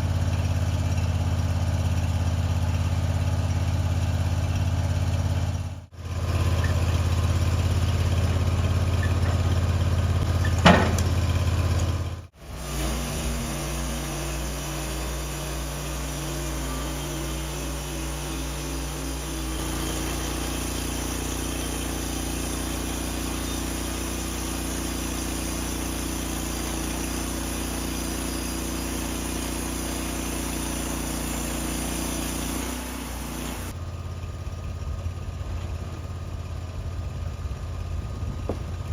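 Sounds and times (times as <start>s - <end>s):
engine running: 0.0s - 38.9s
short sharp squeal: 12.6s - 33.7s.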